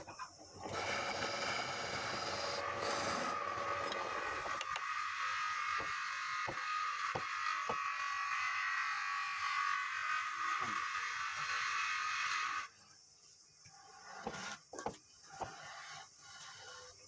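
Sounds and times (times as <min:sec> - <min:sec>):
wood lathe whirring: 0:00.6 - 0:12.7.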